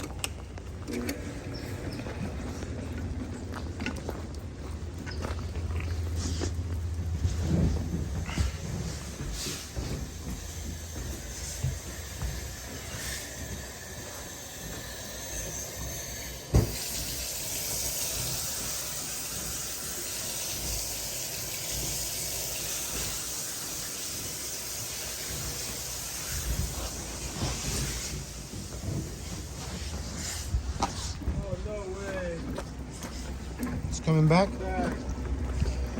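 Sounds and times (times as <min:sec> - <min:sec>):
water rushing through pipe: 0:05.9 - 0:31.2.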